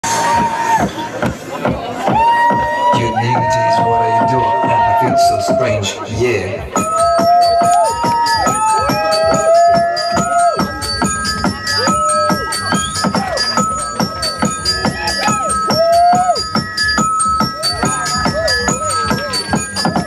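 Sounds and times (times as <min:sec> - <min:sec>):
techno dance music: 0:00.0 - 0:20.0.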